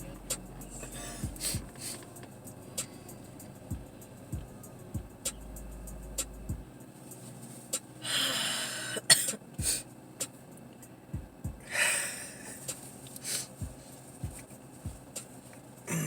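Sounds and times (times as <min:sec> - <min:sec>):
forceful bursts of breath: 0:08.0 - 0:09.9, 0:11.6 - 0:13.6.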